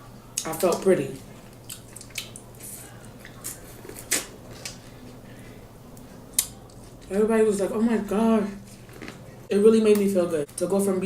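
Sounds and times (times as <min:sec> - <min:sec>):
wet eating clicks and smacks: 0:00.4 - 0:04.8.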